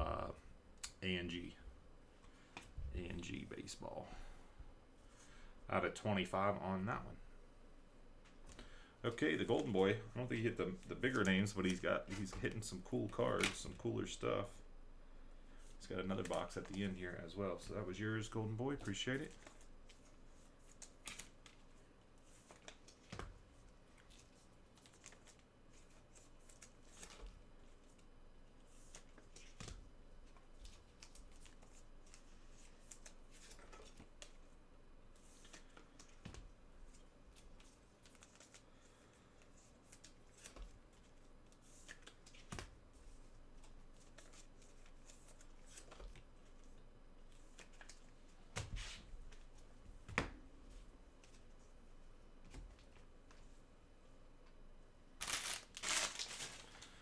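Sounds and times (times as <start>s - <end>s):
trading cards rustling and clicking: 35.2s - 49.7s, 55.2s - 57.0s.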